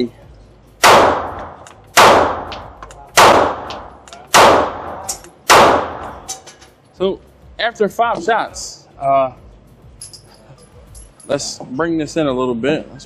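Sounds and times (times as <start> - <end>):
pistol shots echoing: 0.8 - 6.3.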